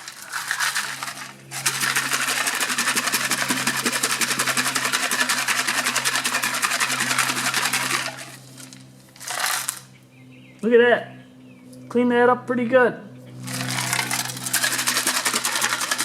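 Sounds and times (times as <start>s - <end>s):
rocks rattling in plastic tank: 0.0s - 8.2s, 13.5s - 16.0s.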